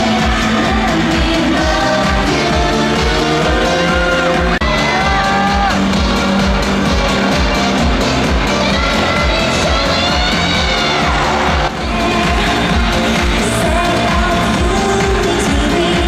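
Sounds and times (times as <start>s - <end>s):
girl group singing: 0.0s - 6.6s, 7.8s - 16.0s
steady drum beat: 0.0s - 16.0s
crowd shouting: 3.2s - 13.9s.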